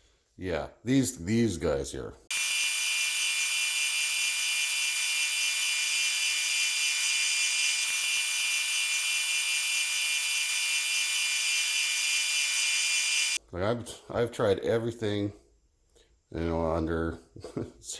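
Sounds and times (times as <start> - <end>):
machine tool high-pitched whine: 2.3 - 13.4.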